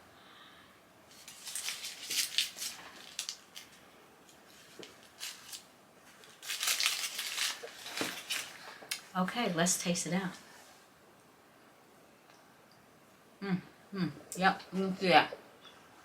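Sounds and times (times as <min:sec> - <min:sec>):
wrapper crinkling and rustling: 0:01.1 - 0:09.2.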